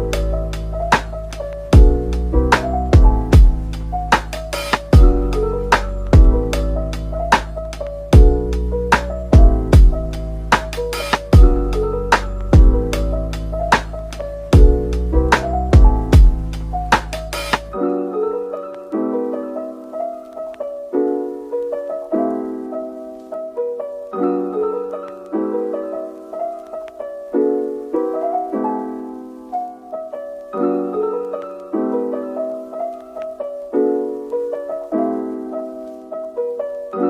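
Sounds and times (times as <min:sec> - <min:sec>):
soft piano chords: 0:00.0 - 0:37.0.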